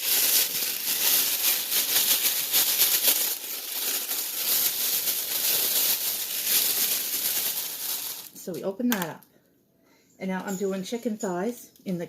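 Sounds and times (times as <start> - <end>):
plastic bag crinkling: 0.0 - 9.2.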